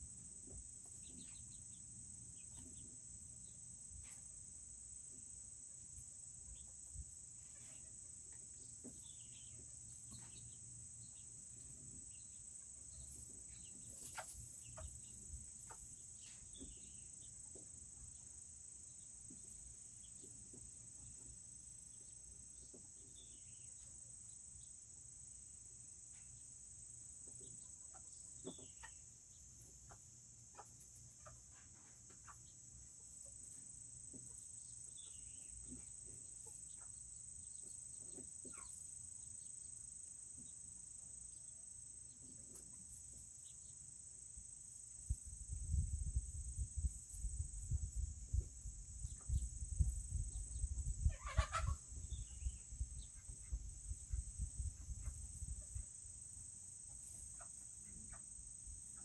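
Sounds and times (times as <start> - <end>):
crickets chirping: 0.0 - 59.0
chickens chirping: 12.2 - 17.0, 27.2 - 33.5, 38.0 - 38.9, 50.6 - 55.9, 56.8 - 58.3.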